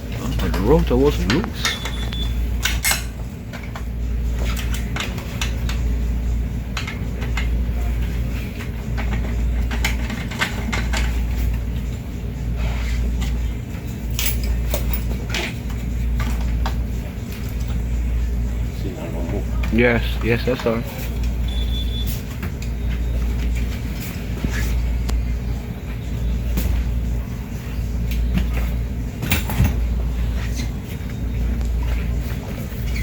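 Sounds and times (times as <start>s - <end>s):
low steady hum: 0.0s - 33.0s
clicks and metallic tool clinks: 14.1s - 15.4s.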